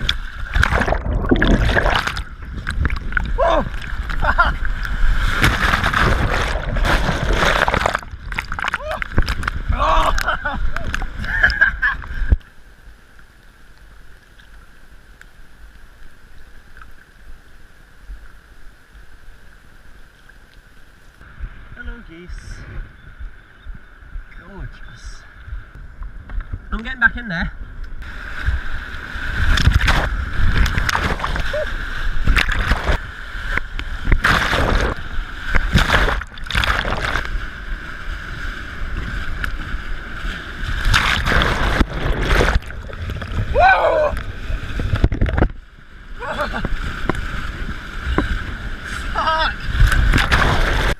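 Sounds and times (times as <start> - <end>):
whitewater rushing: 0.0 - 11.2
paddle splashes: 0.0 - 12.4, 28.1 - 37.6, 38.2 - 50.9
steady low rumble: 0.0 - 13.8
wind buffeting microphone: 21.2 - 26.8.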